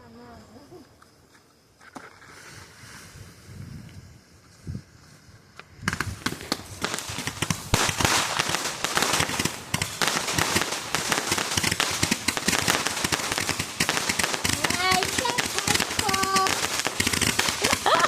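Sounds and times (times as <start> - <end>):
fireworks crackling and popping: 5.5 - 18.0.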